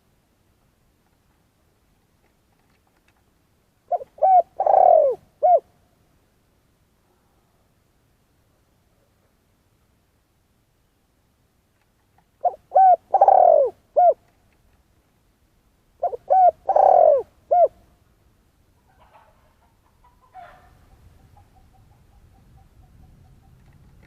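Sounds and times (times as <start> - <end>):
dove cooing: 3.9 - 5.8, 12.4 - 14.2, 16.0 - 17.8.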